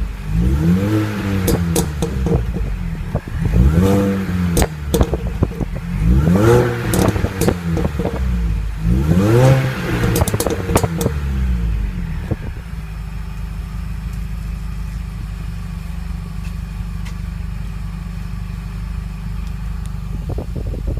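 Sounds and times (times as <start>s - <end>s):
car engine revving and idling: 0.0s - 20.9s
exhaust pops and crackles: 1.4s - 8.4s, 9.4s - 11.3s.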